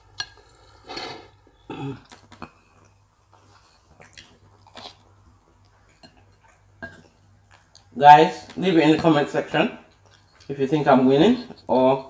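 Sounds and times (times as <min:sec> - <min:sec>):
chewing: 0:02.0 - 0:07.9, 0:09.9 - 0:10.5.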